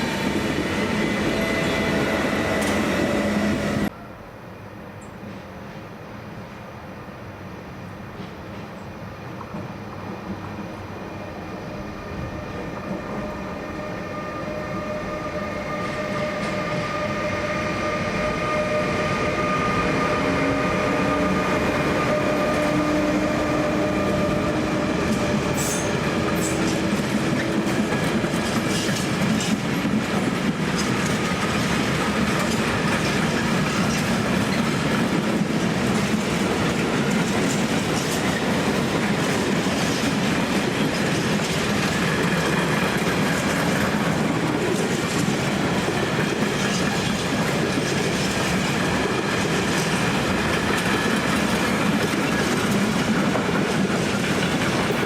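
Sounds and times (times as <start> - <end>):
train wheels clattering over rail joints: 22.1 - 55.0.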